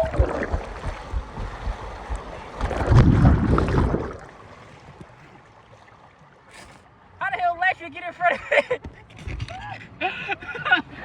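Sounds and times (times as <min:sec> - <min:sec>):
wind buffeting microphone: 0:00.0 - 0:05.0
rushing water: 0:00.0 - 0:11.0.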